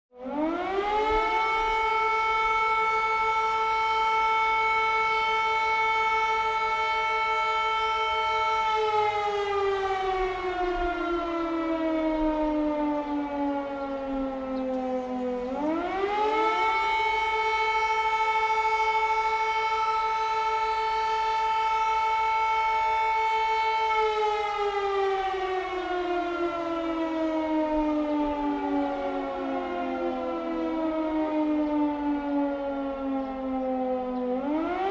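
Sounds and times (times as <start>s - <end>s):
air raid siren wailing: 0.1s - 34.9s.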